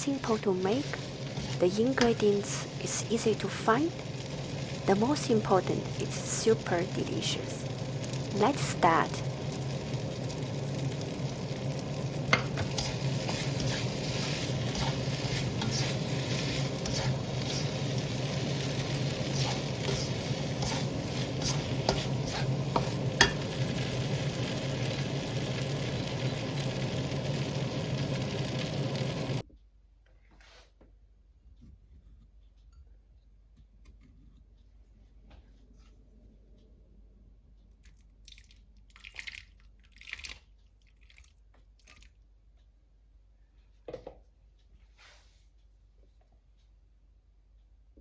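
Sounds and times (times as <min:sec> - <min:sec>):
food sizzling in hot oil: 0:00.0 - 0:29.4.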